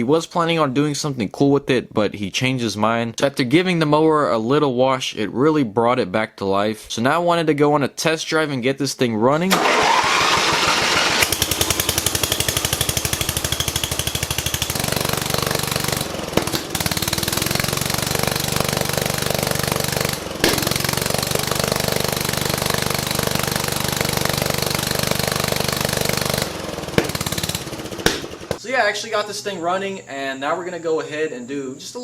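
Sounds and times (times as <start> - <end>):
riding lawn mower engine running: 9.5 - 28.6.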